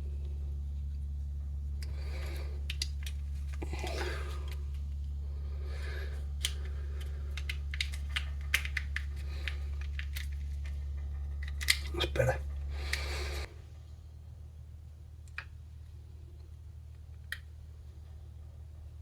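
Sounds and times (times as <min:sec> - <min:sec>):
steady low hum: 0:00.0 - 0:19.0
plastic key fob clicks: 0:06.4 - 0:10.8.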